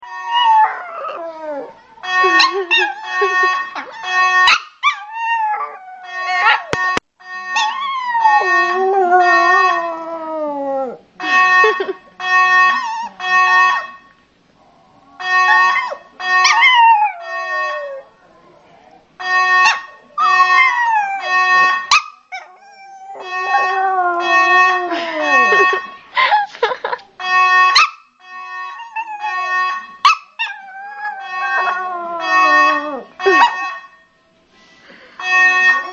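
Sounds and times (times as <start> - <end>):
fire alarm tone: 2.0 - 10.0, 11.2 - 14.2, 15.2 - 18.1, 19.2 - 35.9
dog yipping: 3.8 - 6.8, 15.5 - 17.2.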